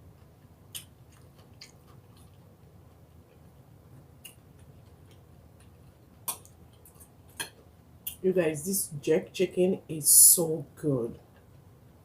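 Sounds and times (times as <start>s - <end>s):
person chewing food: 0.0s - 7.7s.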